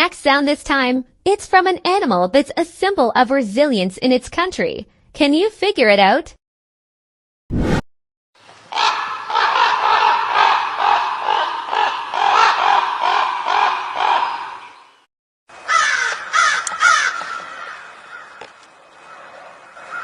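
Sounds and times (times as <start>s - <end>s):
raven cawing: 8.7s - 15.0s, 15.6s - 20.0s.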